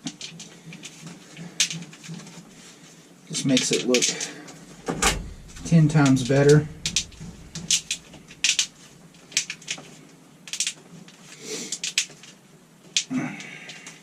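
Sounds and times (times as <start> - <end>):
plastic wrap clicking and crinkling: 9.3 - 13.1.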